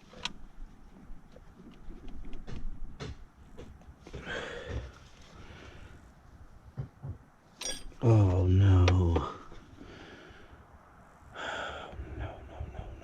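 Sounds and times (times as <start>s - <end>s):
rustling breathy noise: 4.1s - 6.5s, 9.2s - 13.0s.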